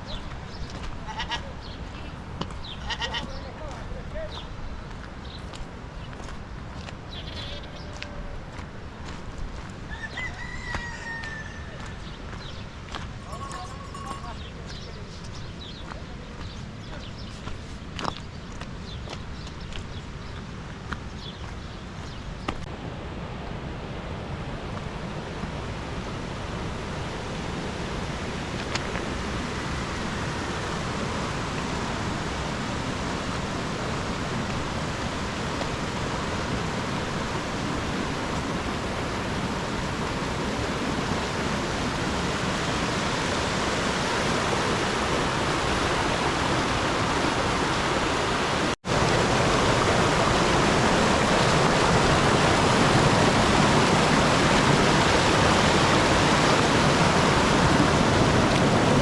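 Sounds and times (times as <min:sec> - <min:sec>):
water rushing: 0:22.6 - 0:59.0.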